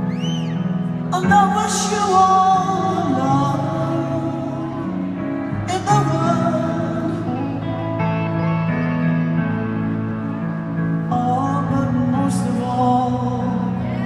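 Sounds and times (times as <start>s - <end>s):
sustained music accompaniment: 0.0s - 14.0s
person singing: 1.0s - 8.5s, 11.0s - 14.0s.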